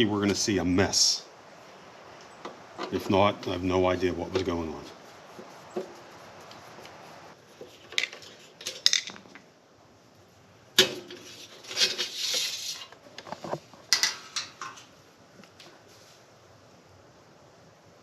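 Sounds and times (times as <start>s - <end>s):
short scrape: 11.2s - 13.5s.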